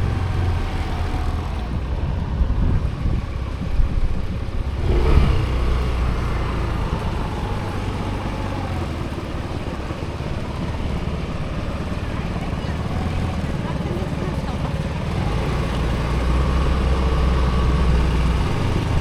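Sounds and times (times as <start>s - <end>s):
vehicle engine and road rumble: 0.0s - 19.0s.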